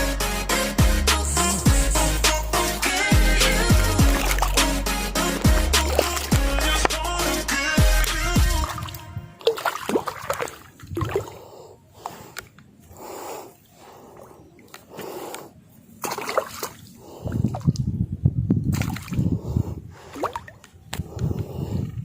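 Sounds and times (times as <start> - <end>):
water splashing and sloshing: 3.7 - 7.0, 8.0 - 12.6, 14.0 - 17.9, 18.7 - 19.3, 20.0 - 20.8.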